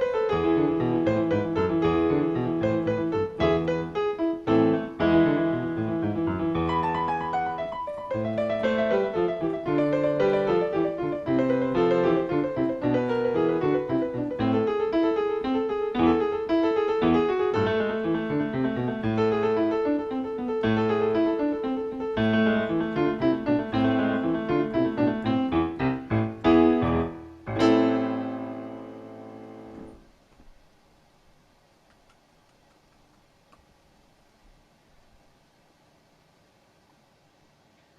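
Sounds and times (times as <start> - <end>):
solo piano piece: 0.0 - 30.1.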